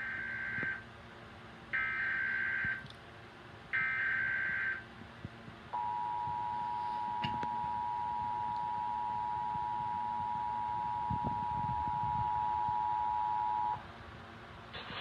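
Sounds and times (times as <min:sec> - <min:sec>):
two-tone attention signal: 0:05.8 - 0:13.8.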